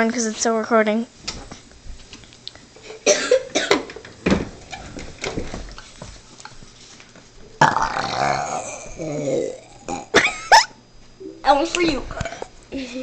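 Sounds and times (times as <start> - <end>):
person coughing: 3.0 - 3.8.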